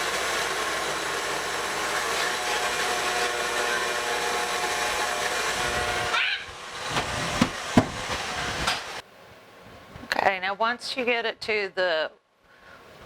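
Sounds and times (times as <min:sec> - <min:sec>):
electric mixer motor whining: 0:00.0 - 0:07.4.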